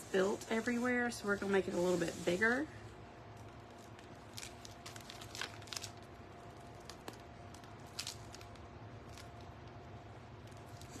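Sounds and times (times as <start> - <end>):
steady low hum: 0.0 - 11.0
plastic piping bag crinkling: 3.4 - 11.0.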